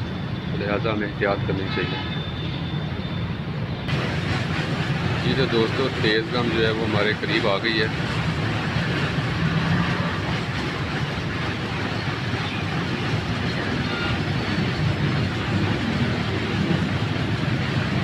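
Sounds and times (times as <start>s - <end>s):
train wheels on track: 0.0s - 18.0s.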